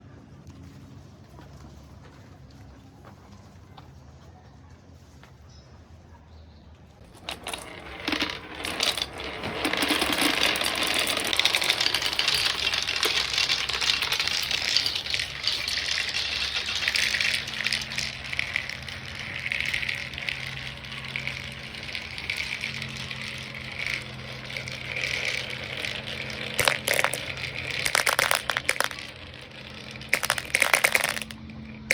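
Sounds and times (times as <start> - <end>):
louder marble clacks: 7.0 - 31.9
marbles rattling down a track: 7.0 - 31.9.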